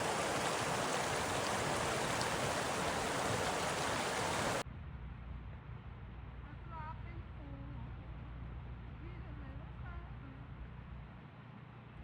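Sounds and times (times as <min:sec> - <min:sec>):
steady rushing noise: 0:00.0 - 0:04.6.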